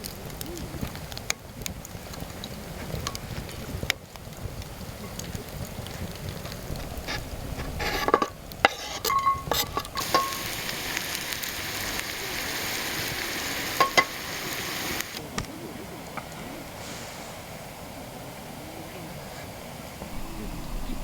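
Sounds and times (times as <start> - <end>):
steak sizzling: 0.0 - 15.5.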